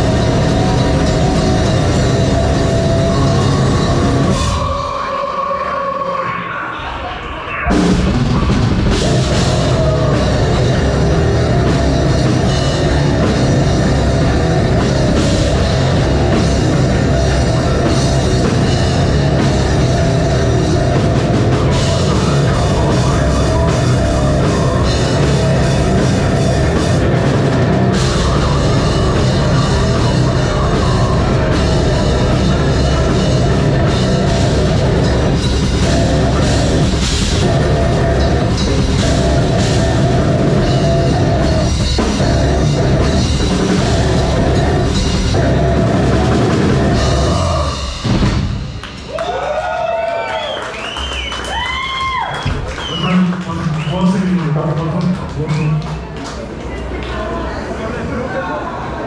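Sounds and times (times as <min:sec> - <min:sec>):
pounding drum kit: 0:00.0 - 0:05.4, 0:07.5 - 0:56.1
live metal band playing: 0:00.0 - 0:49.1.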